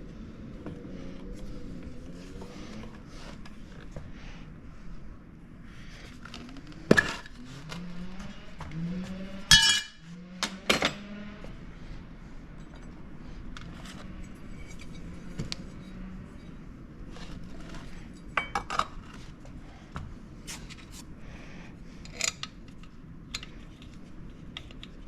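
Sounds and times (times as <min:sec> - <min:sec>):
metal tools clinking and knocking: 0:09.5 - 0:11.0, 0:17.6 - 0:19.1.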